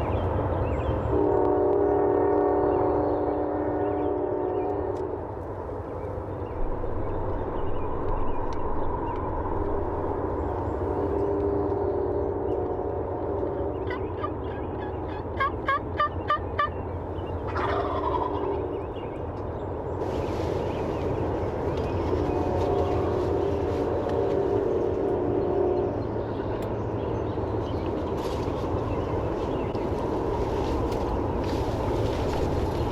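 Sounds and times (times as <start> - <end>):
higher turkey calls: 13.9 - 16.8, 17.5 - 18.4
turkeys gobbling: 13.9 - 16.8, 17.5 - 18.4.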